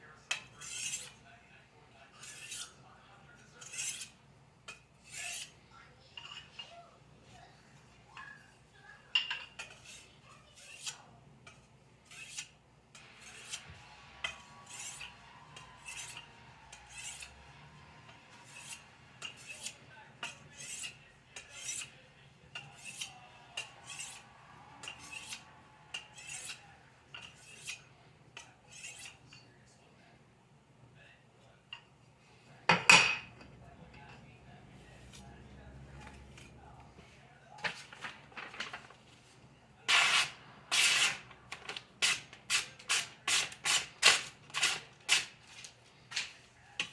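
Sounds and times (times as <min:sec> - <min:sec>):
knife sharpening strokes: 0:00.3 - 0:01.2, 0:02.2 - 0:02.8, 0:03.6 - 0:05.6, 0:09.5 - 0:29.3, 0:39.9 - 0:41.2.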